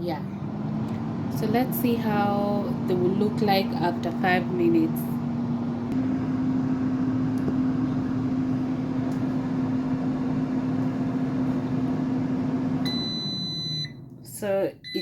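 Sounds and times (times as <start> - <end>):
air fryer fan whooshing: 0.0 - 14.5
high beep: 12.9 - 14.0.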